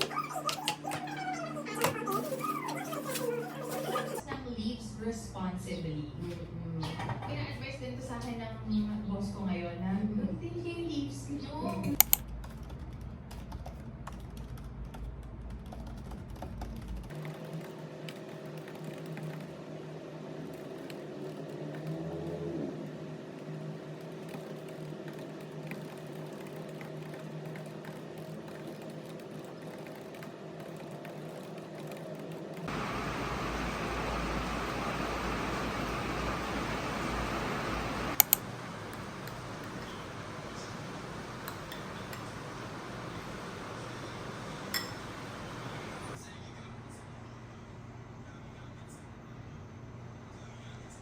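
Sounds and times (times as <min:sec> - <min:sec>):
low room hum: 0:00.0 - 0:51.0
machine hum: 0:31.8 - 0:46.2
glass clink: 0:44.7 - 0:45.1.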